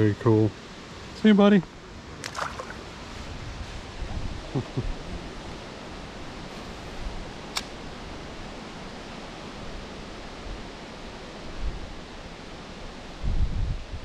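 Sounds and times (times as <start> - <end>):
creek water rushing: 0.2 - 13.3
sharp click: 7.5 - 7.8.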